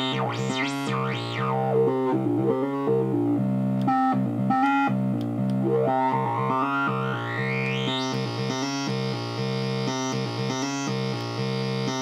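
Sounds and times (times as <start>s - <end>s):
steady synth bass: 0.0s - 12.0s
synthesizer chord pattern: 0.0s - 12.0s
upward gliding tone: 5.6s - 8.0s.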